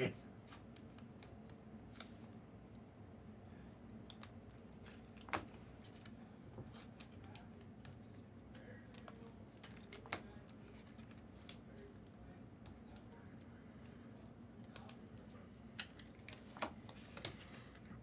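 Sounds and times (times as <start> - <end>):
faint room hum: 0.0 - 18.0
light clicks and taps: 12.6 - 17.4.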